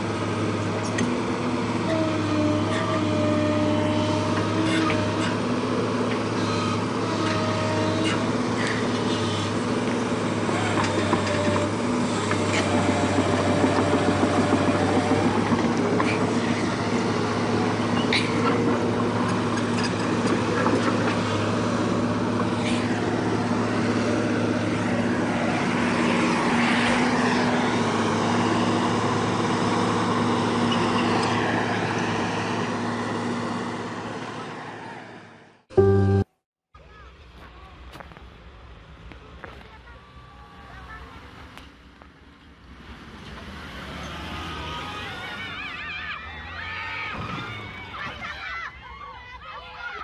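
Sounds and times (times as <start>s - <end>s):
heavy vehicle engine running: 0.0s - 36.3s.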